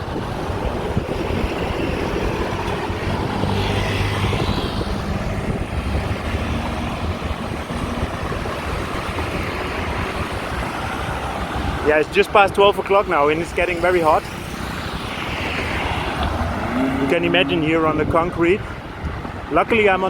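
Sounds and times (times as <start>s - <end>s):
vehicle engine passing: 0.0s - 11.8s, 13.6s - 18.2s
road traffic: 0.0s - 20.0s
wind rumble on microphone: 0.0s - 20.0s.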